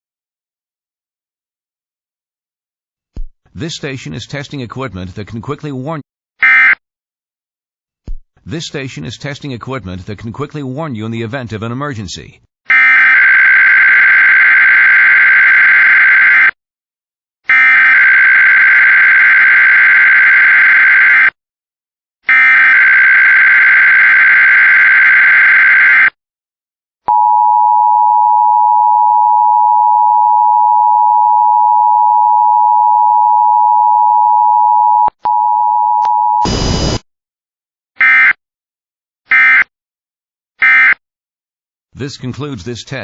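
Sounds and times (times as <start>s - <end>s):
harsh noise burst: 36.4s - 37.0s.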